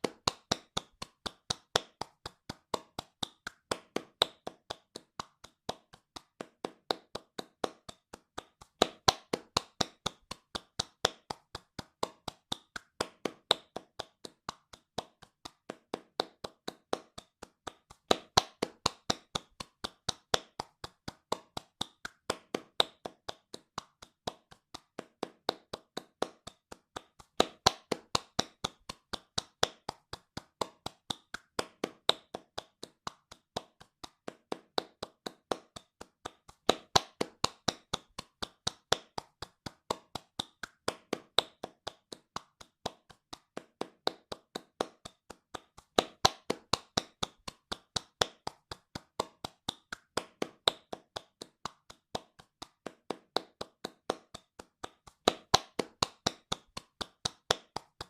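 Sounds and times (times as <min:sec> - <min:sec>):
hands clapping fast: 0:00.0 - 0:58.0.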